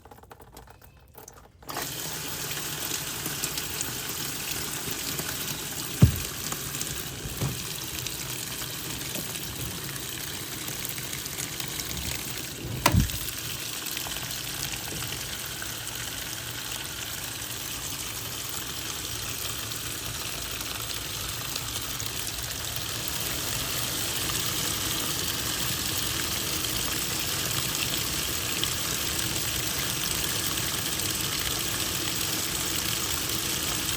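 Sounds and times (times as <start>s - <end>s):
water gushing from a tap: 1.6s - 33.9s
short knocks: 6.0s - 6.6s, 12.0s - 13.3s.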